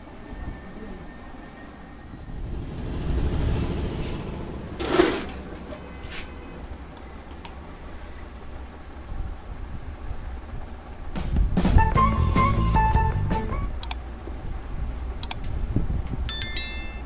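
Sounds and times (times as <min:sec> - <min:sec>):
vehicle rumble: 0:02.1 - 0:05.8.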